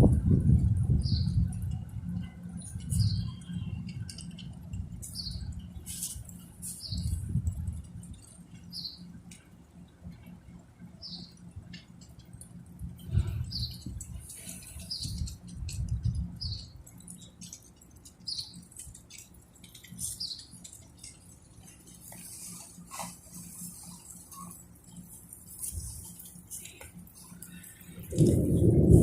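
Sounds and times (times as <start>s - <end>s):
wind buffeting microphone: 0.0s - 5.9s, 6.8s - 8.2s, 12.8s - 16.8s, 27.8s - 29.0s
patter and ticks: 0.0s - 29.0s.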